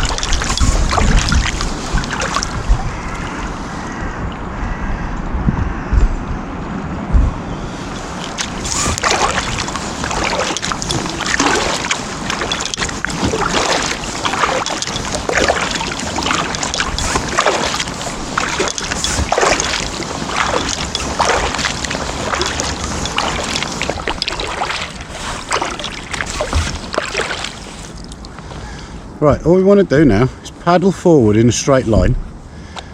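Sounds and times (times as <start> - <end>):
kayak paddle splashing in water: 0.0 - 3.8, 7.9 - 28.2.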